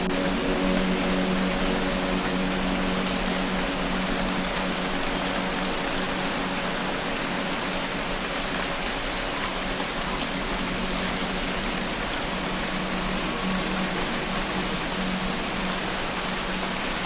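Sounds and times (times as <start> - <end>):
low drone: 0.0 - 17.0
rain hiss: 0.0 - 17.0.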